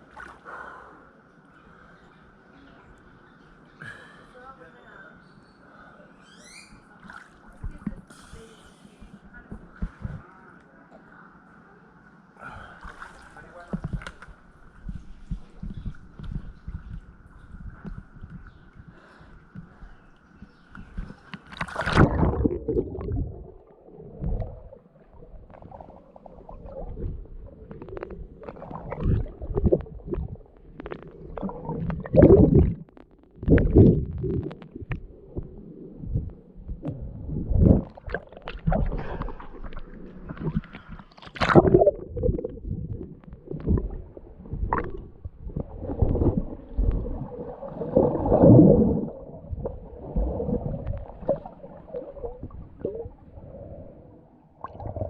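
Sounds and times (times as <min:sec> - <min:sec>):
muffled water gurgling and splashing: 0:13.7 - 0:55.0.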